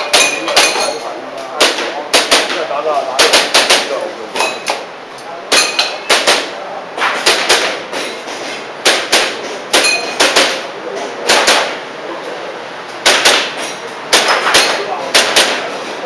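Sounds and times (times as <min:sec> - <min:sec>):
pellets ringing on steel targets: 0:00.0 - 0:01.1, 0:05.5 - 0:06.3, 0:09.7 - 0:10.6, 0:13.1 - 0:15.0
airsoft pistol shots: 0:07.1 - 0:07.8, 0:08.8 - 0:10.6, 0:11.3 - 0:11.8, 0:13.0 - 0:15.7.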